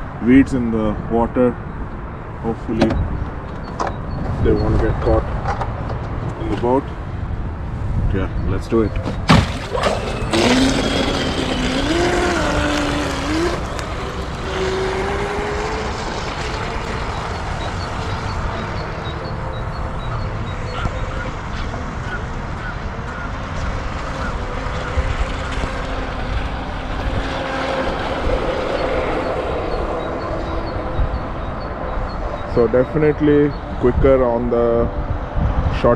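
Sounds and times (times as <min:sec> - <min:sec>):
wind on microphone: 0:00.9 - 0:35.9
electric boat motor running: 0:09.4 - 0:20.6.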